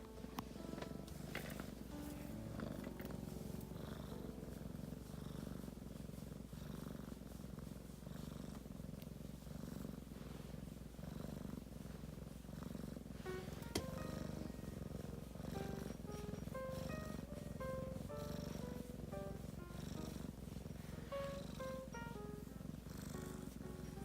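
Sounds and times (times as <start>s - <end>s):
cat purring: 0.0s - 24.0s.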